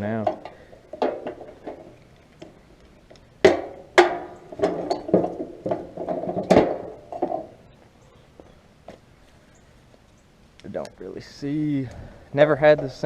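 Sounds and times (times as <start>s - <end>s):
sharp knocks and clanks: 0.0s - 7.6s.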